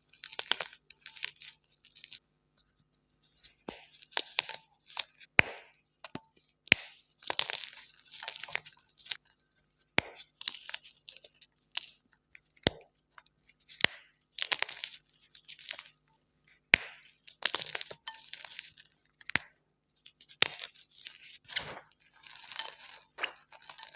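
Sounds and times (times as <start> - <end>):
chalk cracking: 20.0 - 23.9.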